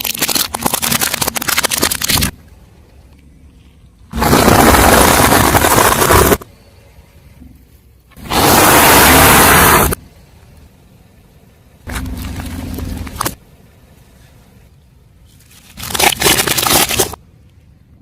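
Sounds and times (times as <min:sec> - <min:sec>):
car tyre crushing objects: 0:04.1 - 0:06.5, 0:11.8 - 0:13.4, 0:15.3 - 0:17.2.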